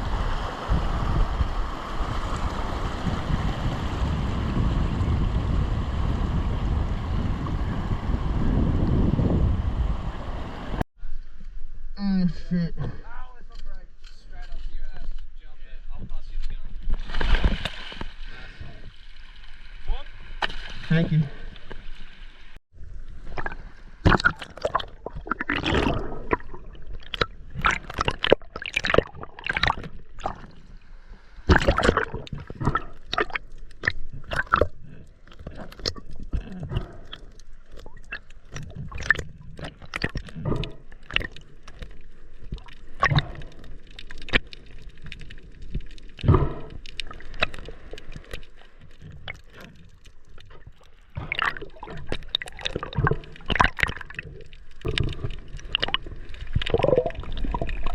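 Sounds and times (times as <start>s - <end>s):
water sloshing and splashing: 16.5s - 57.9s
water gurgling: 16.9s - 30.8s, 31.4s - 57.9s.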